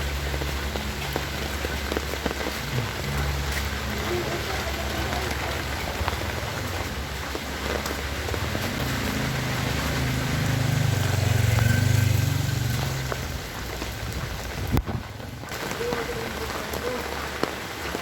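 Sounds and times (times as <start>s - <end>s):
heavy rain falling: 0.0s - 18.0s
vehicle engine passing: 1.2s - 14.6s.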